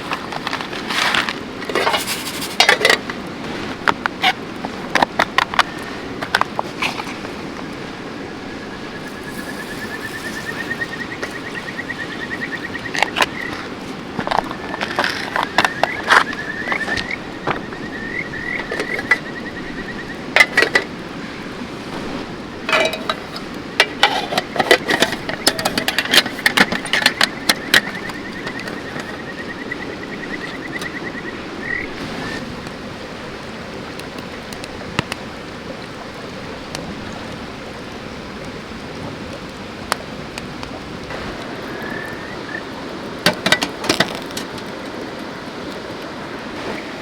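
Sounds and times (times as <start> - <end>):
stream rushing: 0.0 - 47.0
utensils clinking: 1.6 - 3.1, 20.4 - 20.9, 22.7 - 29.2.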